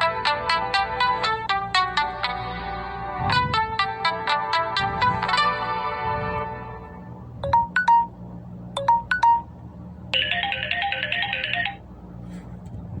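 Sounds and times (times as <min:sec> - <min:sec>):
tablet ringtone melody: 0:00.0 - 0:03.0, 0:07.4 - 0:08.2, 0:08.8 - 0:09.6, 0:10.2 - 0:11.8.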